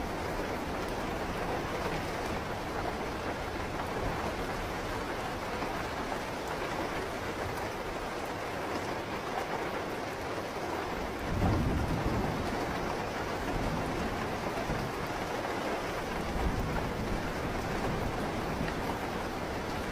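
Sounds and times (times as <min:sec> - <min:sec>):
heavy rain falling: 0:00.0 - 0:19.9
low rumble of thunder: 0:11.0 - 0:19.9.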